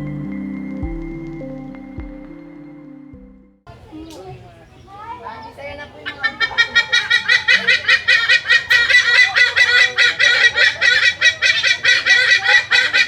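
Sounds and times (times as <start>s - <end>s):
poultry calling: 3.7s - 13.0s.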